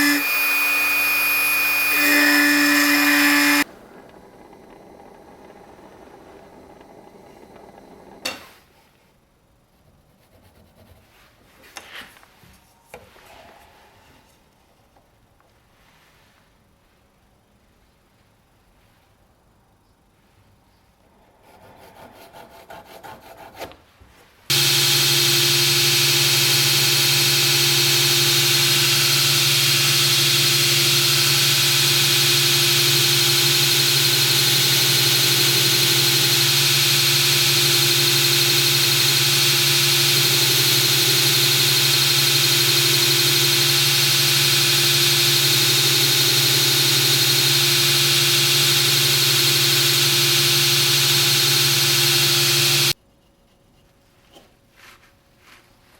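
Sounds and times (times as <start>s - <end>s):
workshop machine running: 0.0s - 8.4s, 24.5s - 53.0s.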